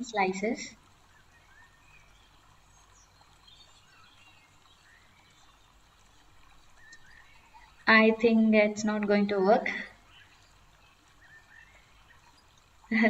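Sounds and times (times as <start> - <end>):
faint bird chirps: 1.0 - 7.9, 9.8 - 13.0.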